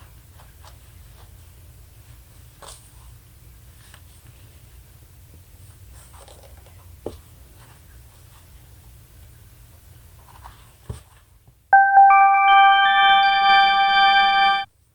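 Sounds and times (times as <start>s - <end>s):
bright chiming music: 11.8s - 14.7s.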